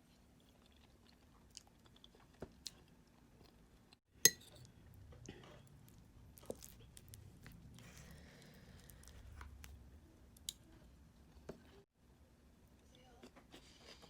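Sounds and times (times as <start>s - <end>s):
faint chewing: 0.0s - 4.0s, 4.6s - 11.8s.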